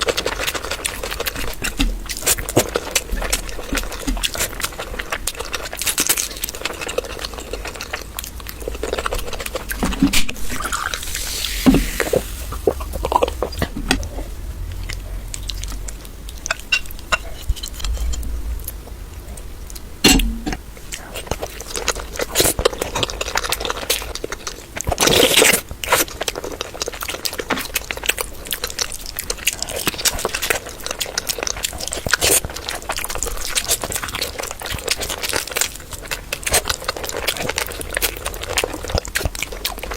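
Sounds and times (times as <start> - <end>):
wet squelchy food handling: 0.0 - 18.2
chewing: 0.0 - 39.9.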